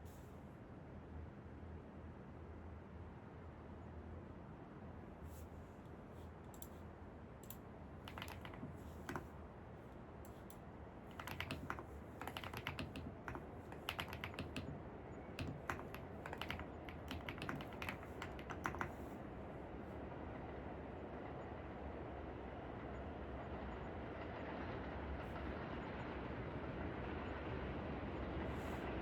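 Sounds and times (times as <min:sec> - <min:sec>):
low background noise: 0:00.0 - 0:29.0
keyboard typing: 0:07.4 - 0:09.4, 0:10.3 - 0:19.2.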